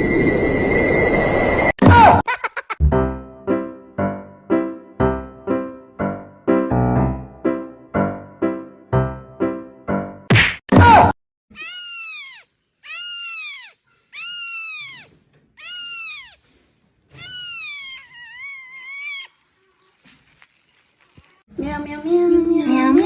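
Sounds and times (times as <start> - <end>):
cat meowing: 11.6 - 16.4, 17.1 - 19.5.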